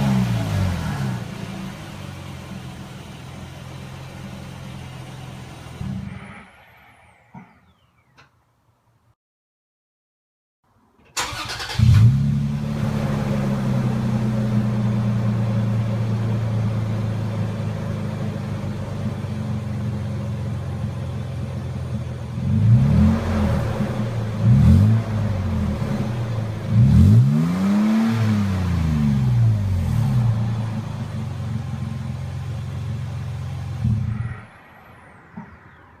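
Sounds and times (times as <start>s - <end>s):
truck engine idling and revving: 0.0s - 7.6s, 11.2s - 36.0s.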